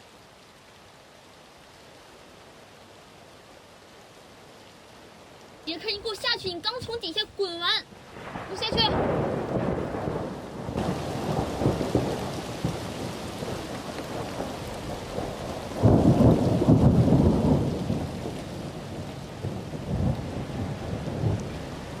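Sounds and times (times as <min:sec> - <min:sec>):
heavy rain: 0:00.0 - 0:22.0
deep rumble of thunder: 0:08.2 - 0:22.0.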